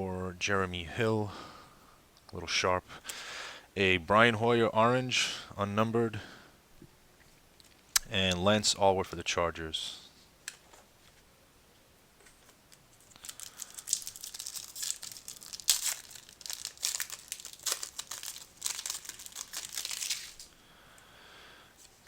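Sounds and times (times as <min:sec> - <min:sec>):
foil wrapper crinkling: 0:12.4 - 0:20.6.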